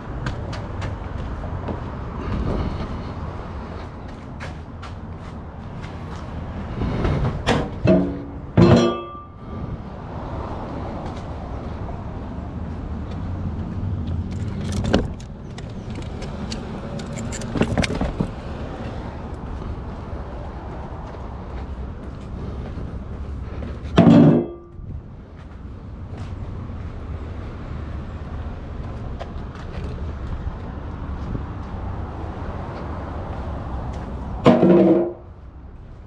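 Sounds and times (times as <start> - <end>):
metallic clanks and knocks: 7.4 - 9.4, 14.3 - 18.4, 24.0 - 24.8, 34.5 - 35.2.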